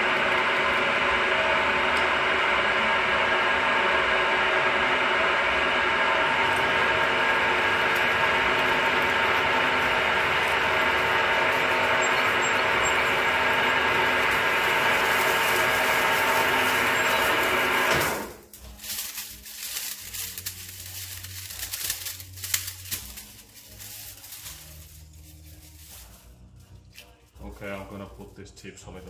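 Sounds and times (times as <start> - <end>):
milling machine drilling metal: 5.4 - 18.3
metal chips clicking and scraping: 7.6 - 17.7, 18.4 - 28.4.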